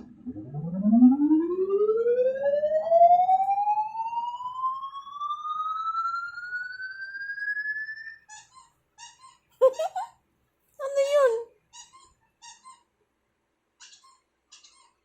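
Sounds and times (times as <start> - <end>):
electronic tone sweeping upward: 0.0 - 8.3.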